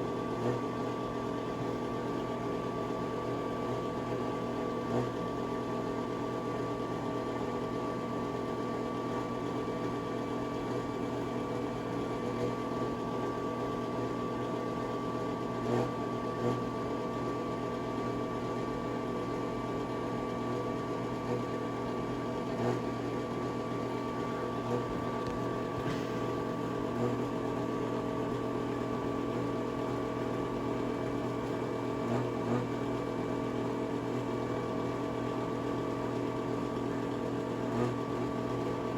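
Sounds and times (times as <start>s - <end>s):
exhaust fan humming: 21.2s - 38.9s.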